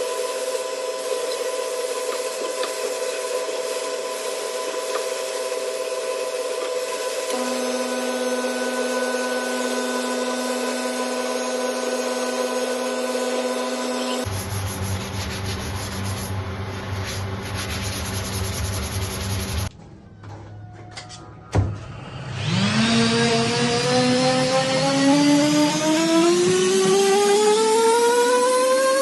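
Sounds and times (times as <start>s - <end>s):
power sander rasping: 0.1s - 16.4s, 21.9s - 29.0s
low hum tone: 7.3s - 16.6s.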